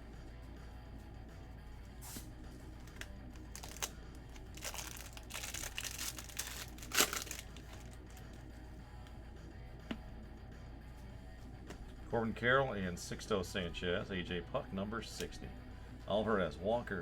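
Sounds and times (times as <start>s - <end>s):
wrapper crinkling and tearing: 2.8s - 8.3s.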